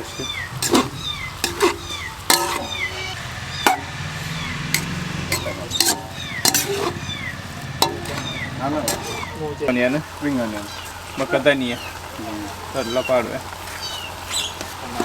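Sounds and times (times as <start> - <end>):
spoon clinking against metal pan: 0.0 - 4.0, 4.6 - 9.4
high falling chirps: 0.0 - 12.1.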